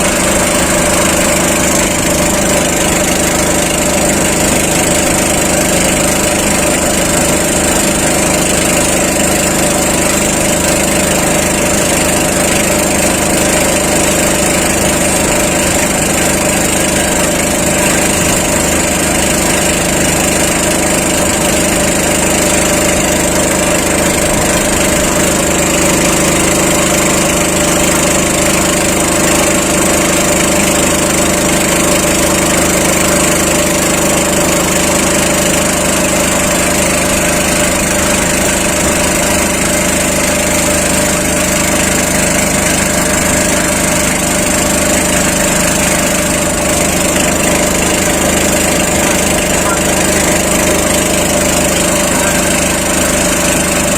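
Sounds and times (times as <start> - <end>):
small engine running: 0.0 - 53.9.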